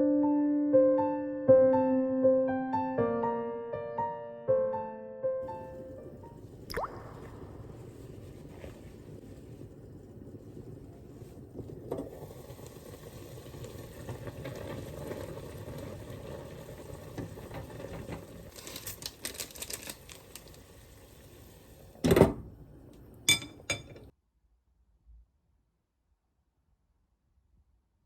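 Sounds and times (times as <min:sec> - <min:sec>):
food hissing in a pan: 0:07.5 - 0:17.4, 0:18.4 - 0:22.0
utensils clattering: 0:23.3 - 0:24.1.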